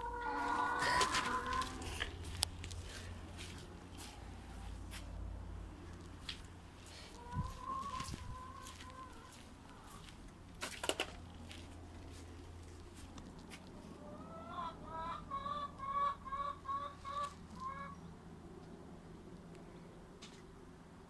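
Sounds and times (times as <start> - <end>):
chicken clucking: 0.0 - 2.5, 7.1 - 10.2, 13.8 - 18.0.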